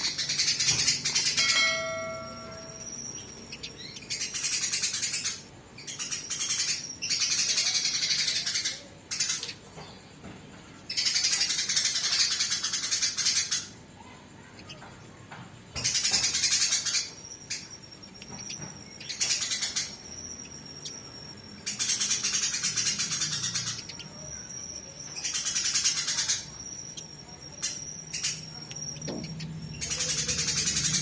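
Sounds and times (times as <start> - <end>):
sparrows chattering harshly: 0.0 - 31.0
thin high whine: 1.4 - 4.1.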